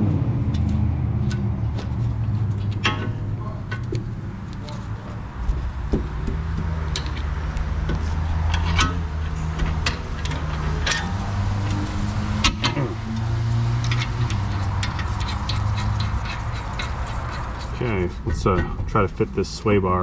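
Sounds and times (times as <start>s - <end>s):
vehicle engine droning: 0.0s - 20.0s
hand tools clinking on metal: 13.8s - 18.8s.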